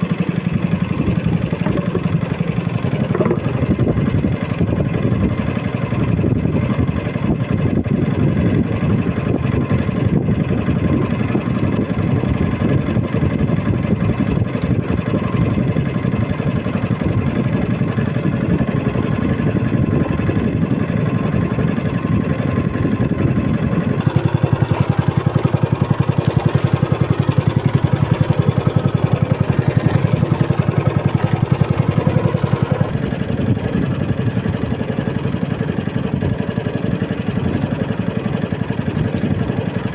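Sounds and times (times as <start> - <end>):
boat motor running: 0.0 - 39.9.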